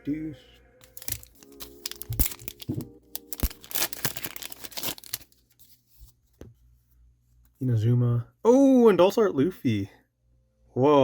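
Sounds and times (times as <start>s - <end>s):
foil wrapper tearing and crinkling: 0.8s - 5.8s.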